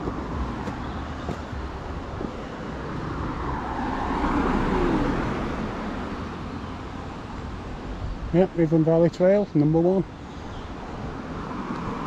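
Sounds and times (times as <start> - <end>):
car passing close by: 0.0 - 6.8
road traffic hum: 0.0 - 12.0.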